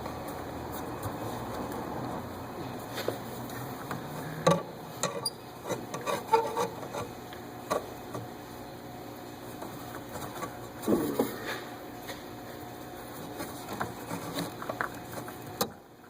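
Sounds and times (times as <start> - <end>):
rubbing: 13.2 - 15.3.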